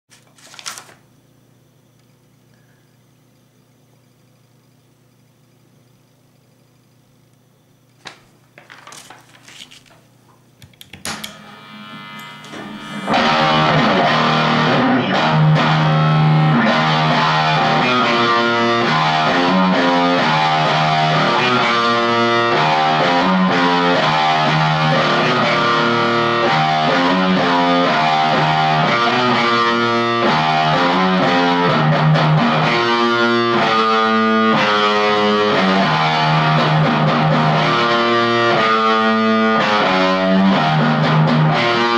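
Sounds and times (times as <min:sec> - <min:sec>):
guitar string and handling noises: 0:08.0 - 0:14.0
distorted electric guitar riff: 0:11.0 - 0:41.9.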